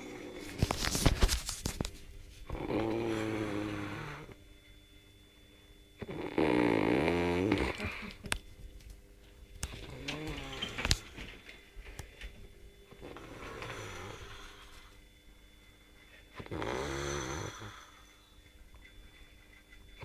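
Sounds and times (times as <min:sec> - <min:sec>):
heavy snoring: 0:00.0 - 0:00.6, 0:02.5 - 0:04.4, 0:06.0 - 0:08.1, 0:09.9 - 0:10.8, 0:12.9 - 0:14.9, 0:16.4 - 0:18.2.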